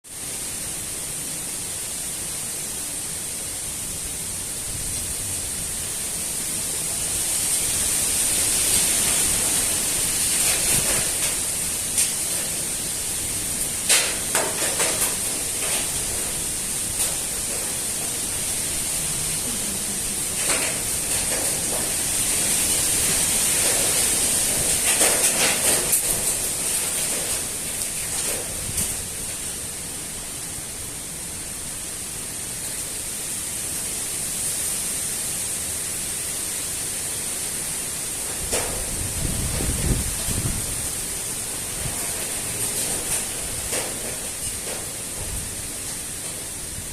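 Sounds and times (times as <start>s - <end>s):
crackles and knocks: 8.7s - 29.6s, 38.2s - 46.6s
gusty wind rushing: 38.3s - 43.8s.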